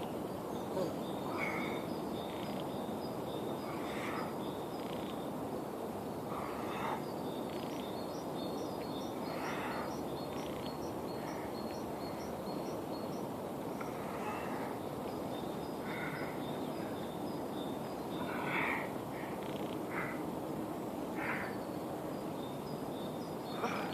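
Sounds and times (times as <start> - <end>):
low background noise: 0.0 - 23.9
harsh bird calls: 0.6 - 5.4.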